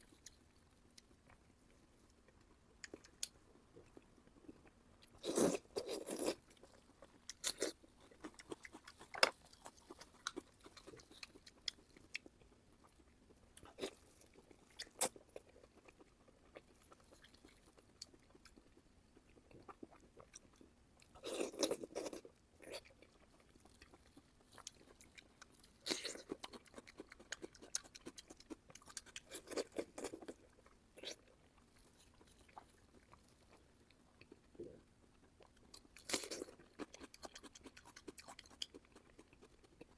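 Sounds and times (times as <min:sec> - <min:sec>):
crunchy biting and chewing: 0:04.6 - 0:13.0, 0:21.0 - 0:33.6, 0:35.4 - 0:39.9.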